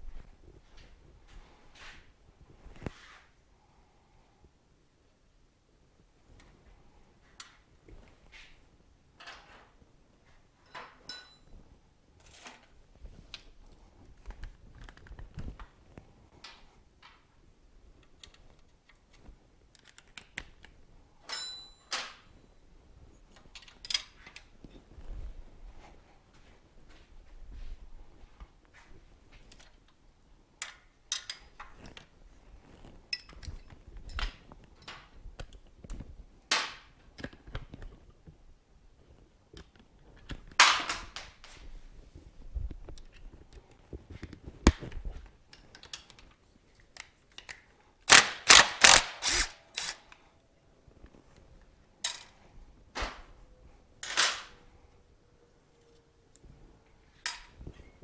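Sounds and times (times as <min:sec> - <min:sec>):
hand tools clicking and clinking: 0:46.9 - 0:50.2
loud clicks: 0:48.1 - 0:50.2.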